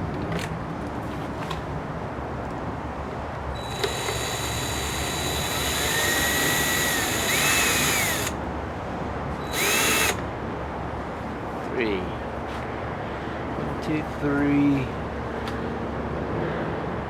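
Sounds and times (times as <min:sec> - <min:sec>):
power drill whining: 0:03.6 - 0:08.4, 0:09.4 - 0:10.2.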